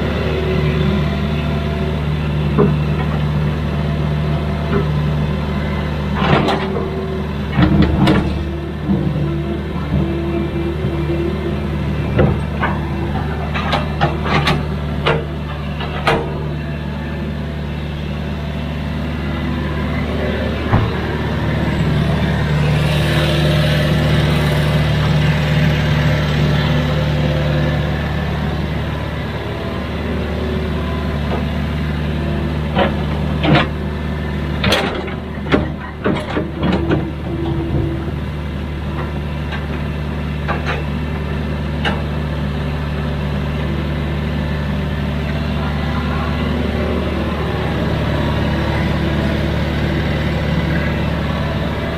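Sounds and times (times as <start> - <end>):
excavator diesel engine running: 0.0 - 51.9
metal knocks and clanks: 20.5 - 23.3.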